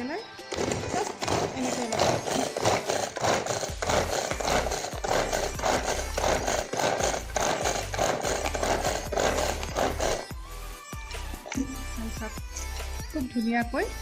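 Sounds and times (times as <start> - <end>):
vegetable chopper whirring and chopping: 0.4 - 10.4.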